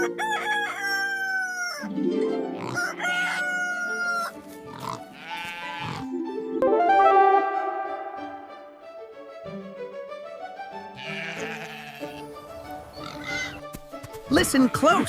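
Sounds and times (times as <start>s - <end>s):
rooster crowing: 0.0s - 1.9s, 2.8s - 4.3s
background music: 0.0s - 15.0s.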